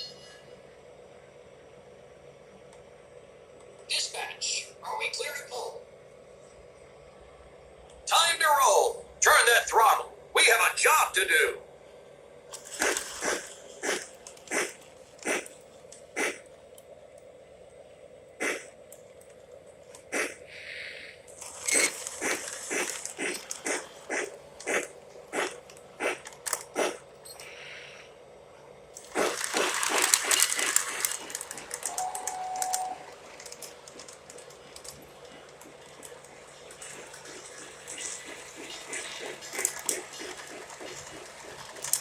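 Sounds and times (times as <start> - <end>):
hissing clattering train: 21.6 - 27.0, 29.0 - 42.0
model train clicking and knocking: 29.1 - 42.0
short steady tone: 31.9 - 33.1.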